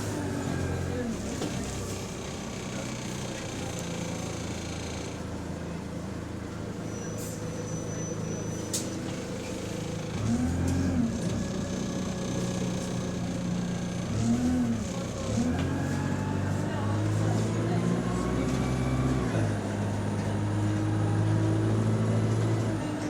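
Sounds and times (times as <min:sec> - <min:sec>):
bus diesel engine running: 0:00.0 - 0:23.0.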